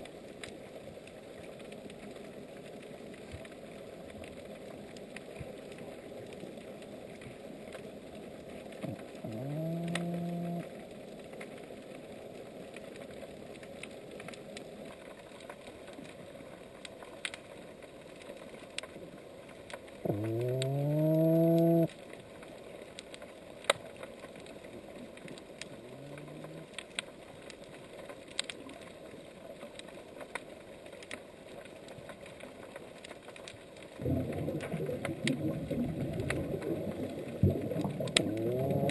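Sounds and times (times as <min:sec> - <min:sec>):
sharp underwater clicks: 0:08.7 - 0:10.7, 0:12.7 - 0:38.9.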